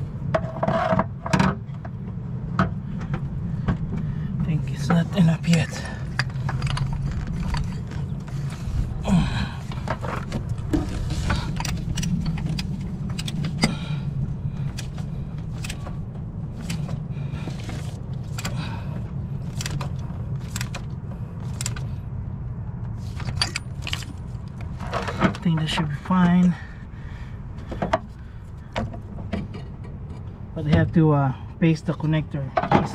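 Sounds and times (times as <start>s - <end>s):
steady low hum: 0.0s - 32.9s
socket wrench clicking on metal: 11.6s - 13.8s.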